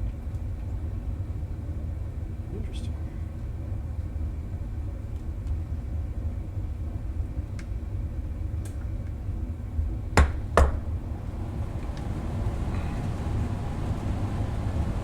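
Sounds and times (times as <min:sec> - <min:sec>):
steady low hum: 0:09.1 - 0:15.0.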